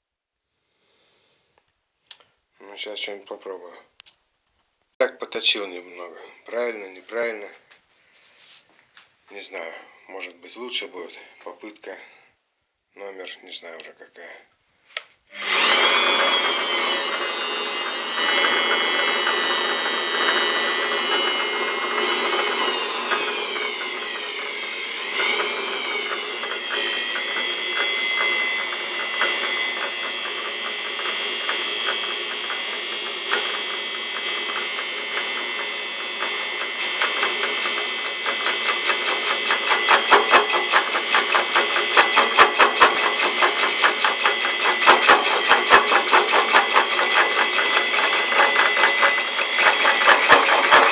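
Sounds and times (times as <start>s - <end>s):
fast even pulsing: 15.4s - 50.9s
metal lathe grinding and whining: 15.4s - 50.9s.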